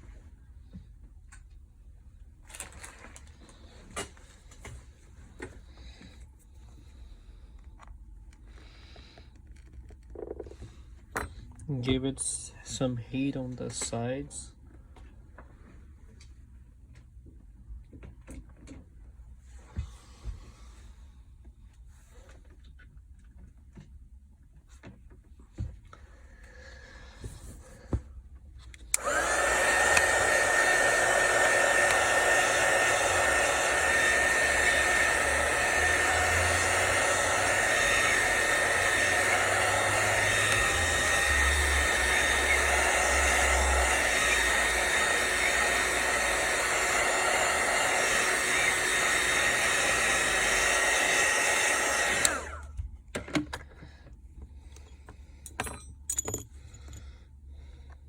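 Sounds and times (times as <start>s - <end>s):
hot-air gun blowing: 28.9s - 52.7s.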